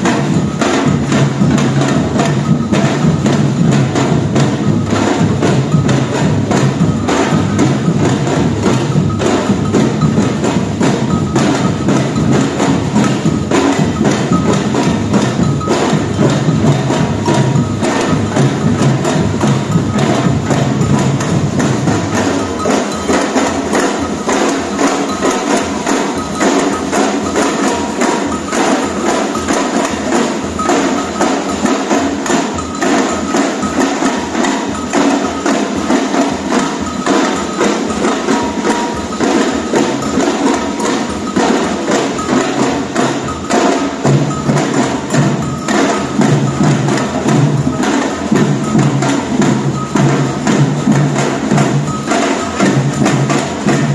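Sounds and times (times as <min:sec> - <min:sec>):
clacking and jingling percussion: 0:00.0 - 0:53.9
samba drums playing fast rhythm: 0:00.0 - 0:53.9.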